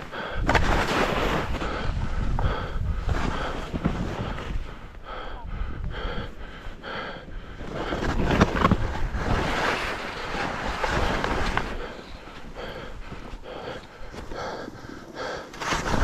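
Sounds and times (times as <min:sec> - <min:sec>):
person breathing hard: 0:00.0 - 0:08.4, 0:10.3 - 0:16.0
wind on microphone: 0:00.4 - 0:06.6.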